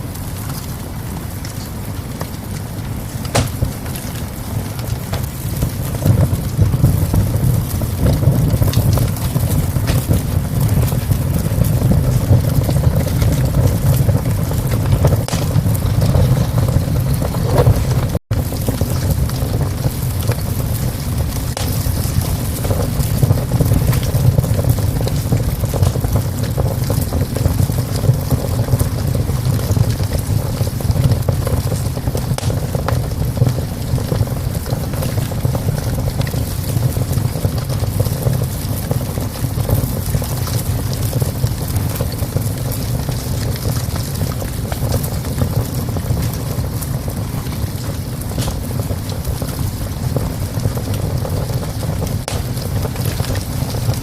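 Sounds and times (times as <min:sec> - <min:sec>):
fire crackling and popping: 0:00.0 - 0:54.0
low rumble of fire: 0:00.0 - 0:54.0.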